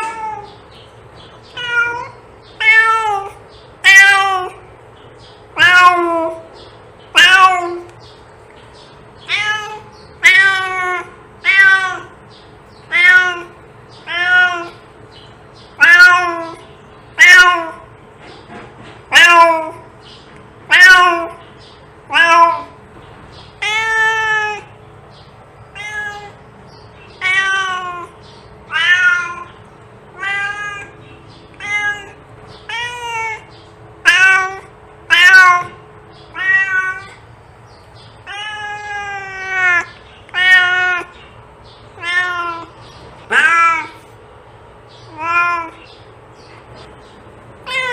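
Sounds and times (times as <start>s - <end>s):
cat meowing: 0.0s - 0.6s, 1.5s - 4.6s, 5.6s - 6.5s, 7.1s - 7.9s, 9.2s - 12.2s, 12.8s - 14.8s, 15.7s - 18.0s, 19.1s - 19.8s, 20.7s - 21.4s, 22.1s - 22.8s, 23.6s - 24.7s, 25.7s - 26.4s, 27.1s - 31.0s, 31.6s - 37.3s, 38.2s - 41.2s, 42.0s - 44.1s, 45.1s - 45.9s, 47.6s - 47.9s.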